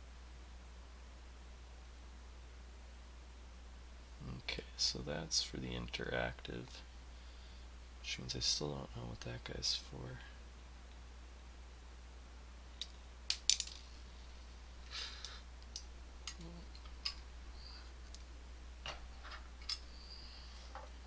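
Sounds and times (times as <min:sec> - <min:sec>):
metal lock parts clicking: 0:19.3 - 0:19.9.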